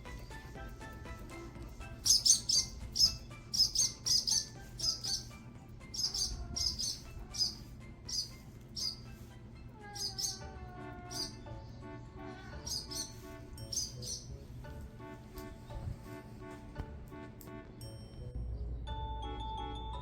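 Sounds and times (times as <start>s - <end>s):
soft music with held notes: 0.0s - 20.0s
high bird chirps: 2.0s - 9.3s, 9.9s - 11.9s, 12.5s - 14.5s.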